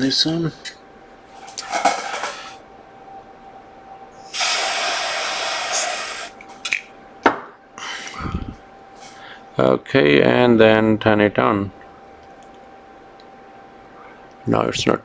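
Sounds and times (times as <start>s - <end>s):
aerosol spray hissing: 4.3s - 6.4s.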